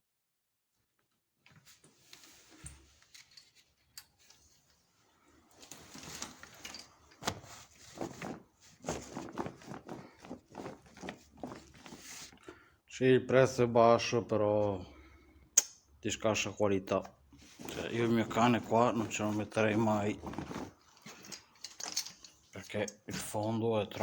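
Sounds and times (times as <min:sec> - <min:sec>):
handling rustling with clicks: 0:01.5 - 0:04.8, 0:05.5 - 0:12.5, 0:17.4 - 0:23.4.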